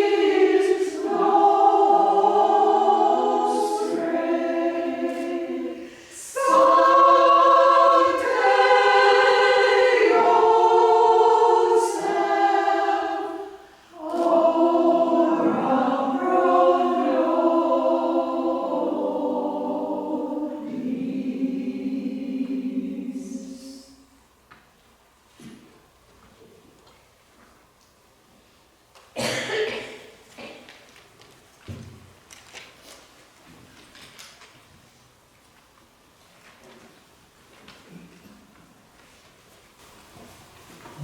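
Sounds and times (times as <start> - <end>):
choir singing: 0.0 - 24.1.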